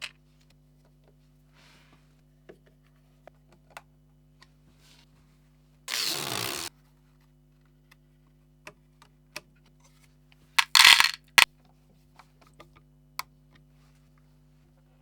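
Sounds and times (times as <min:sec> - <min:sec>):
loud short rattle: 0:10.6 - 0:11.5
small hard objects clicking: 0:10.6 - 0:11.5.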